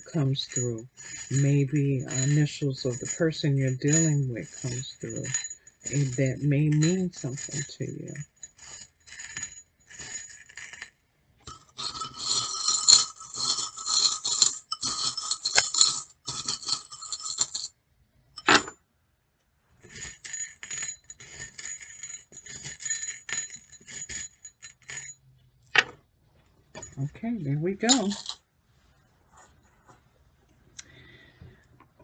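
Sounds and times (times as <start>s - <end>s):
trinkets rattling and clinking: 0.0s - 10.9s, 11.5s - 17.7s, 18.4s - 18.8s, 19.8s - 25.4s, 26.7s - 28.4s.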